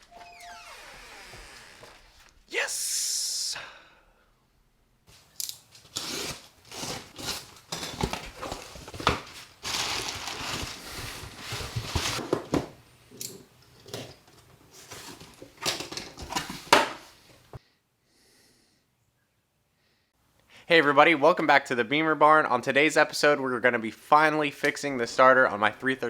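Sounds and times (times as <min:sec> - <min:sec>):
tape and cardboard tearing: 0:05.8 - 0:08.2
packaging rustling and crinkling: 0:05.8 - 0:12.2.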